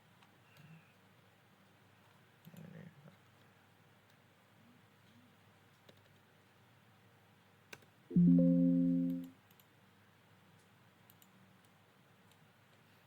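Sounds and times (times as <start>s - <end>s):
computer mouse clicks: 5.8s - 6.2s, 11.1s - 12.9s
electronic alert chime: 8.1s - 9.3s.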